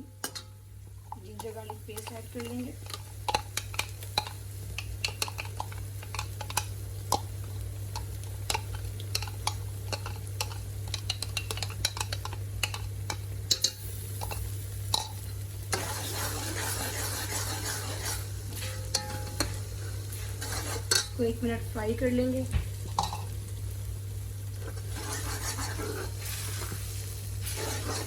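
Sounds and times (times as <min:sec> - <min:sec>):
onions sizzling in oil: 0:00.0 - 0:28.0
spoon scraping cooking pot: 0:08.0 - 0:21.2, 0:24.6 - 0:26.8, 0:27.4 - 0:28.0.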